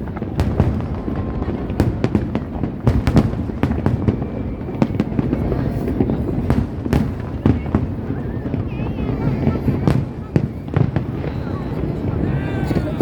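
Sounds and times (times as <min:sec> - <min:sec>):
fireworks bangs and crackles: 0:00.0 - 0:13.0
low rumble of shells bursting: 0:00.2 - 0:09.1.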